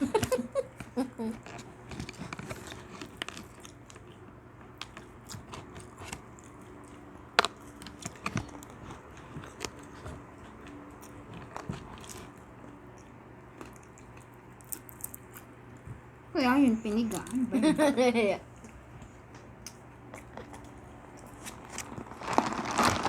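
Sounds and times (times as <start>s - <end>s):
people chewing and crunching: 0.0s - 16.1s, 18.6s - 23.0s.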